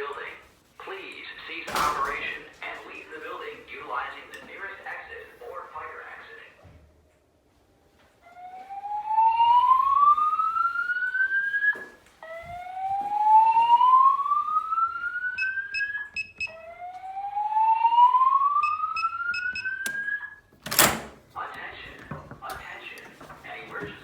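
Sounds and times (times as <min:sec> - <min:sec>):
rising whoop alarm tone: 0:12.6 - 0:20.4
short high beeps: 0:18.6 - 0:20.3.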